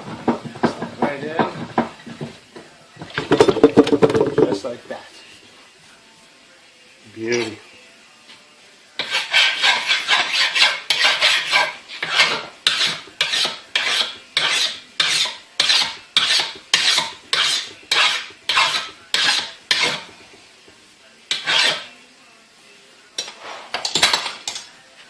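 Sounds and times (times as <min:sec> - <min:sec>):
metal scraping on metal: 0:09.0 - 0:20.4, 0:21.3 - 0:22.0.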